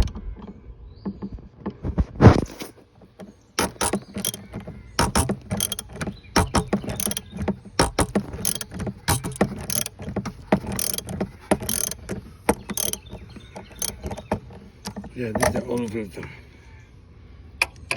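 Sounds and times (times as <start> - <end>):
tools and parts clicking: 2.4 - 16.0.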